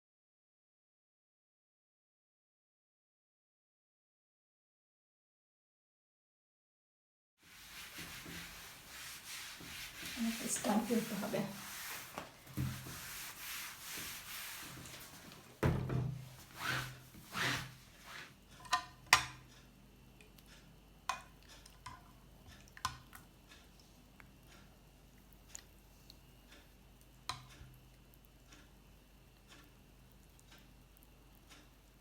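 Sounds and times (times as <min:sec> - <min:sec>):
rustling handling noise: 0:07.5 - 0:18.3
objects knocking and clattering: 0:15.2 - 0:16.3.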